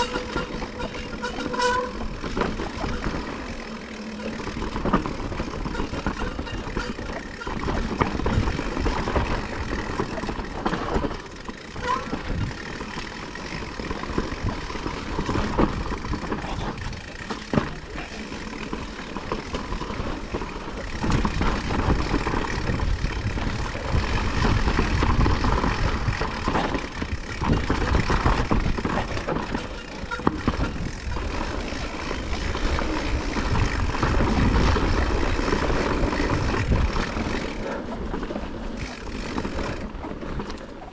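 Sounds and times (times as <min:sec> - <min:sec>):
wind buffeting microphone: 0:20.2 - 0:39.8.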